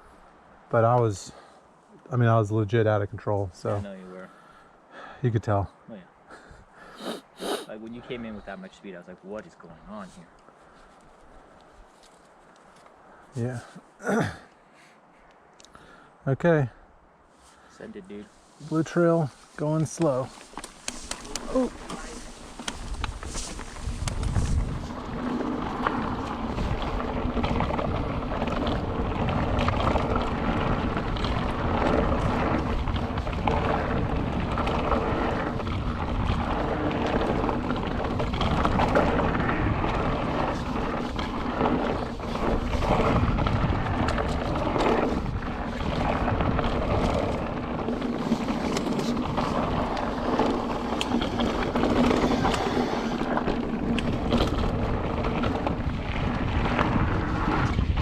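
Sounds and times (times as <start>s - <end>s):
tyre rumble on dirt: 19.5s - 58.0s
bike knocking and rattling: 19.8s - 58.0s
wind buffeting microphone: 20.1s - 58.0s.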